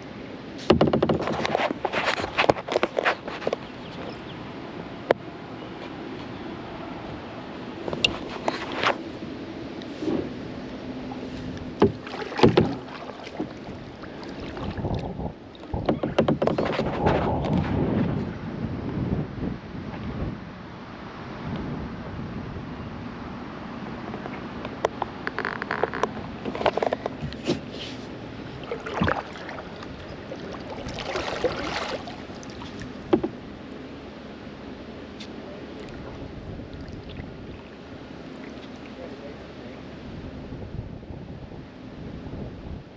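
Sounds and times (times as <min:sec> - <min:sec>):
paddle splashing in water: 0:00.5 - 0:04.2, 0:07.0 - 0:09.2, 0:09.8 - 0:18.3, 0:24.1 - 0:39.8
sharp knocks: 0:00.7 - 0:01.6, 0:11.8 - 0:13.6, 0:15.6 - 0:17.0, 0:33.1 - 0:33.4.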